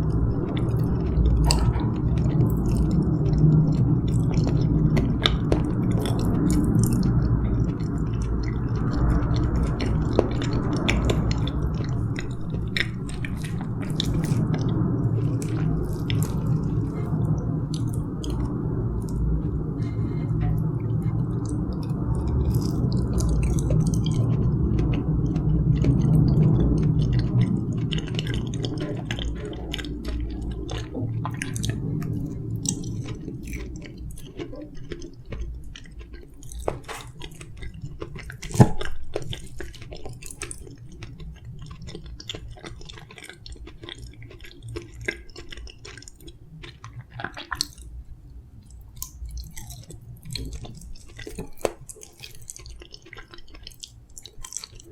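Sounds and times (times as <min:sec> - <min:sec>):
construction noise rumble: 0:00.0 - 0:40.6
person chewing: 0:00.0 - 0:54.9.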